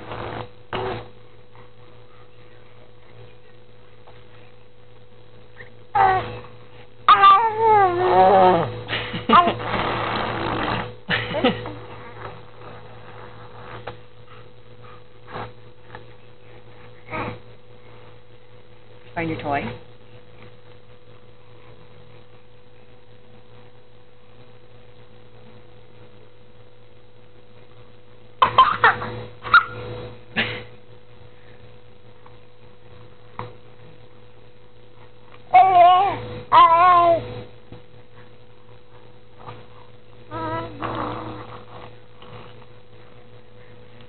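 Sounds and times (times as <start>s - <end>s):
electrical hum: 0.0s - 44.0s
baby vocal noise: 5.6s - 6.4s, 35.5s - 37.3s, 40.3s - 41.5s
baby coughing noises: 28.4s - 29.0s.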